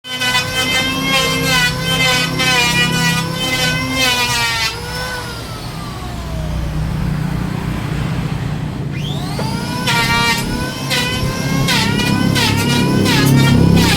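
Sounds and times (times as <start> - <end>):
power tool whining: 0.0 - 13.9
low hum: 4.8 - 13.9.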